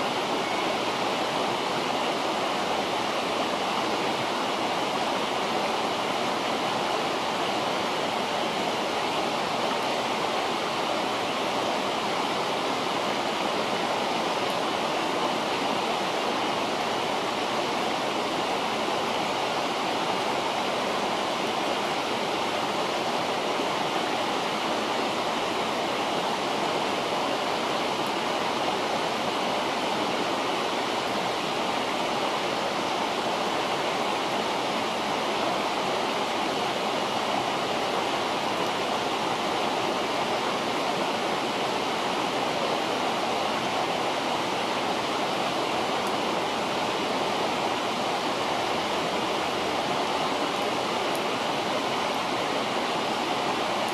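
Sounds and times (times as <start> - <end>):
river water rushing: 0.0 - 53.9.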